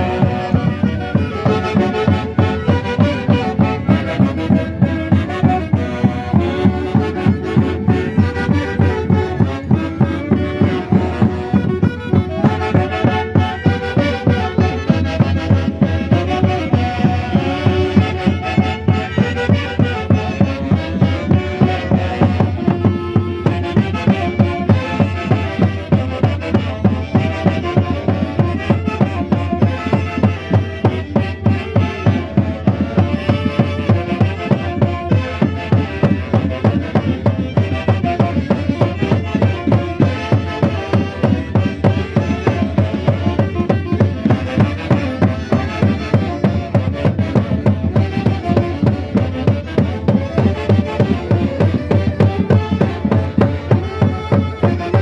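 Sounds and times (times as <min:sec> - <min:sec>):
folk band melody instruments: 0:00.0 - 0:55.0
steady pulsing beat: 0:00.0 - 0:55.0.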